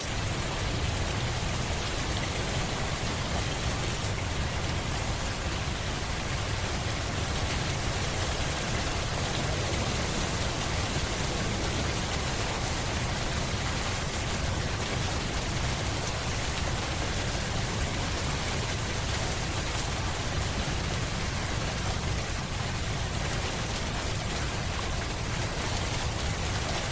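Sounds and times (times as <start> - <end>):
steady rain falling: 0.0 - 26.9.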